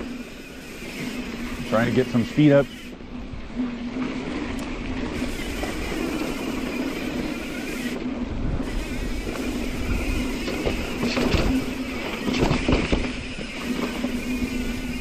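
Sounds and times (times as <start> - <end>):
bike tyres on dirt: 0.0 - 15.0.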